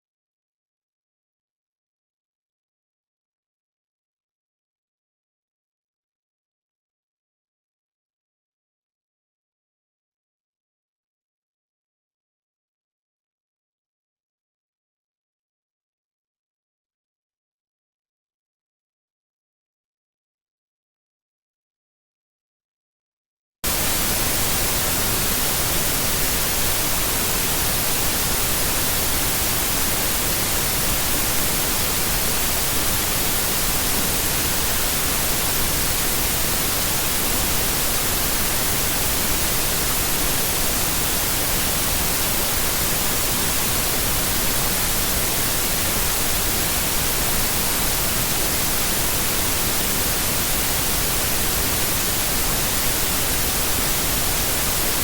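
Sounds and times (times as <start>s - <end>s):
white noise hiss: 23.6s - 55.0s.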